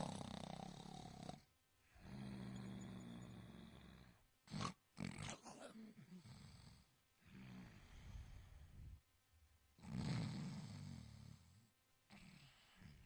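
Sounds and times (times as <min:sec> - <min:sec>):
kitten snoring: 0:00.0 - 0:08.7, 0:09.8 - 0:13.0
kitten snorts: 0:04.5 - 0:06.6, 0:09.8 - 0:11.4.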